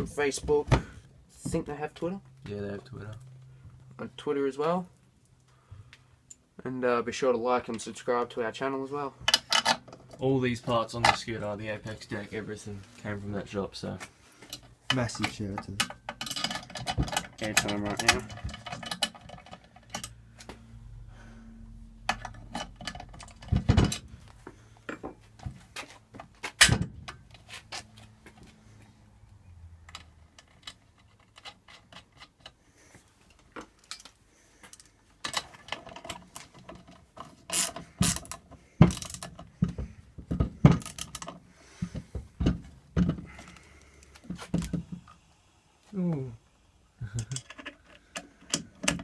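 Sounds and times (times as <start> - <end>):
metal parts clicking and knocking: 9.3 - 10.2, 14.5 - 20.2, 22.0 - 24.1, 29.8 - 32.6, 33.3 - 44.8, 47.2 - 49.0.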